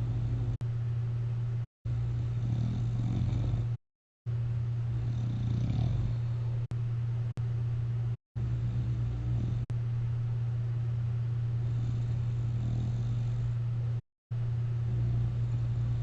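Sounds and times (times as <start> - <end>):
steady low hum: 0.0 - 16.0
person snoring: 2.2 - 3.8, 5.0 - 6.3, 8.5 - 9.7, 11.6 - 13.5, 14.9 - 16.0.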